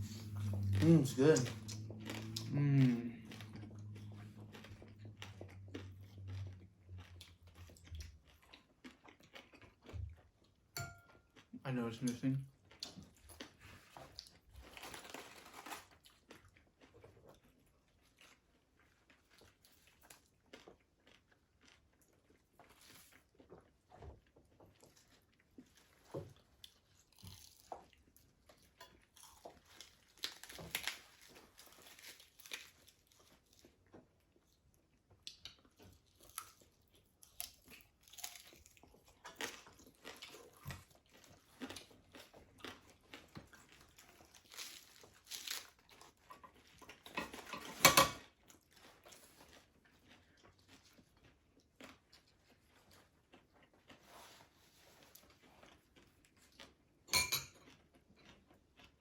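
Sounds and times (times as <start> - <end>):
crunching crispy food: 11.9 - 23.6, 26.6 - 47.0.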